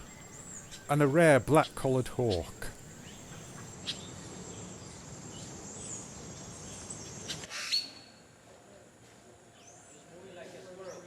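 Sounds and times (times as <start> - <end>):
birds chirping: 0.0 - 4.7
steady high insect-like tone: 0.0 - 8.4.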